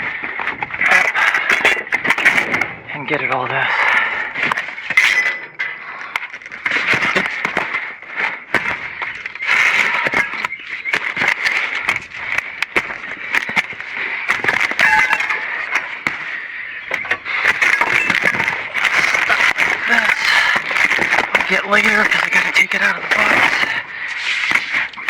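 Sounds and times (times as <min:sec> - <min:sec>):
junk clattering and scraping: 0:08.5 - 0:16.3, 0:16.9 - 0:22.3.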